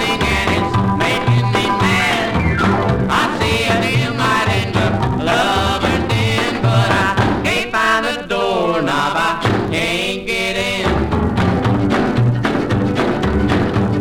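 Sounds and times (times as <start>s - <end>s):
country band with steady beat: 0.0s - 7.5s, 10.9s - 14.0s
two voices singing: 0.0s - 13.2s.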